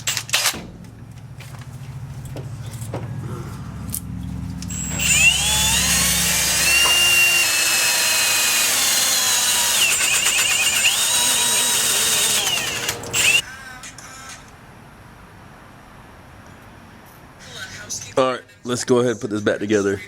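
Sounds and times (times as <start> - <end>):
power drill whining: 4.6 - 13.4.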